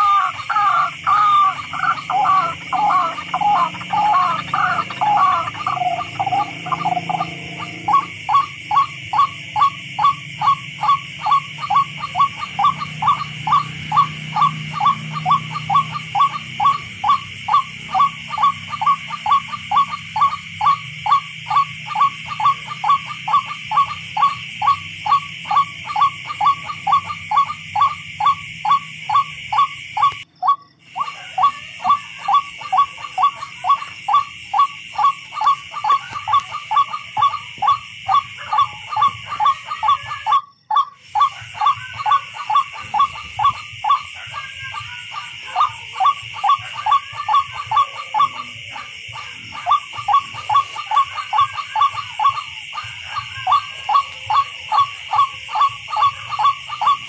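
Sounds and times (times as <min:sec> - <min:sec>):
rail bird calling: 0:00.0 - 0:57.0.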